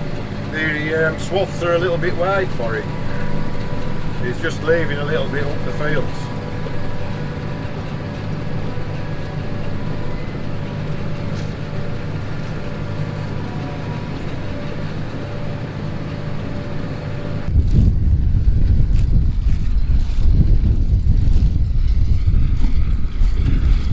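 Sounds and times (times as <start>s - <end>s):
faint steady whine: 0.0s - 23.9s
tractor engine running: 0.0s - 23.9s
wind rumble on microphone: 17.4s - 23.9s.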